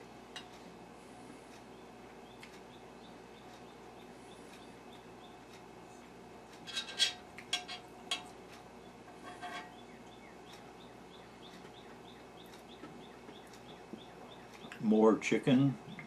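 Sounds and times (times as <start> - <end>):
cutlery scraping on a plate: 6.6 - 8.3, 9.1 - 9.8.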